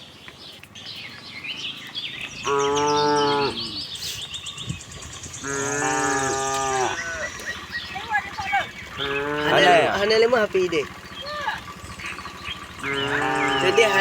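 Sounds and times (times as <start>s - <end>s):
cows mooing: 2.4s - 4.0s, 5.3s - 14.0s.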